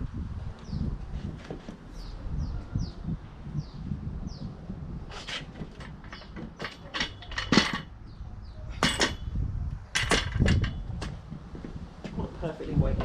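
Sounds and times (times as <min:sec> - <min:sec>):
metal tools clanking: 0:05.1 - 0:08.0, 0:08.7 - 0:11.2.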